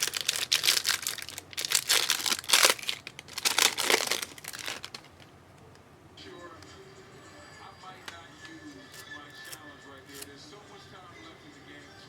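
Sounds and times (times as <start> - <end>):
plastic wrapper crinkling and tearing: 0.0 - 5.3.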